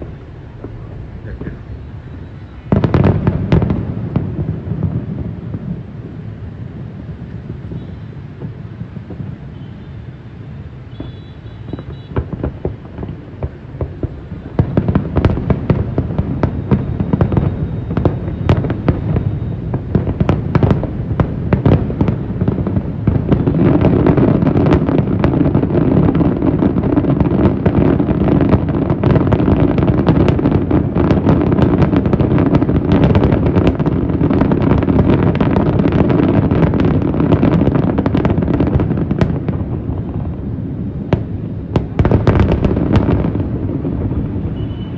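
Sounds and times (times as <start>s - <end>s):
fireworks bangs and crackling: 0.0s - 44.9s.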